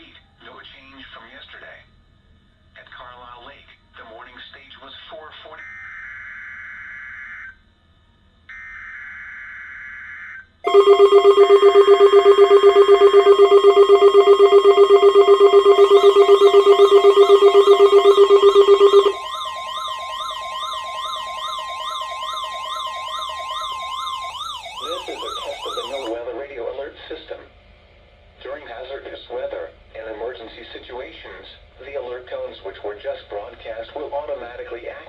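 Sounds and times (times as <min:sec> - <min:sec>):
buzzing digital data burst: 0:10.7 - 0:22.6
pulsing alert tone: 0:10.7 - 0:26.1
siren-like wail sweeping in pitch: 0:10.7 - 0:26.1.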